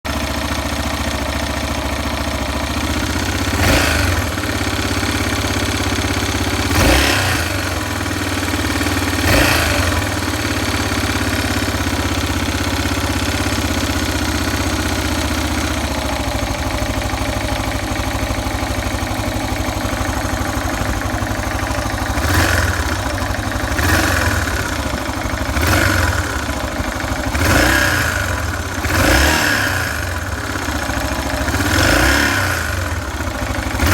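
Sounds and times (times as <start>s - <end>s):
motorcycle engine idling: 0.1s - 33.9s.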